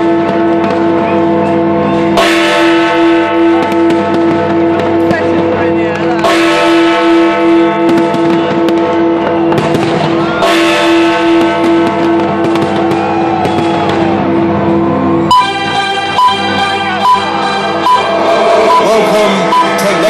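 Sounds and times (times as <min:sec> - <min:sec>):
fireworks banging and crackling: 0:00.0 - 0:01.6, 0:02.2 - 0:14.7
loud music with sustained notes: 0:13.8 - 0:20.0.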